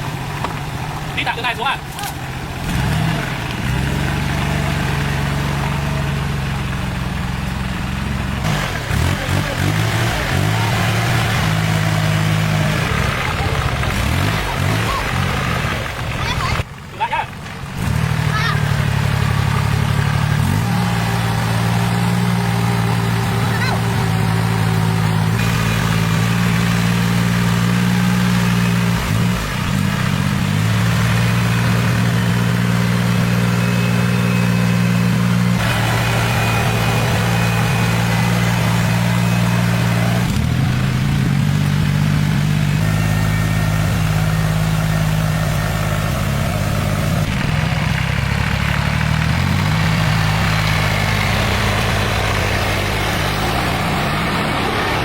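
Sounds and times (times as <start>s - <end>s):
vehicle engine idling: 0.0s - 55.0s.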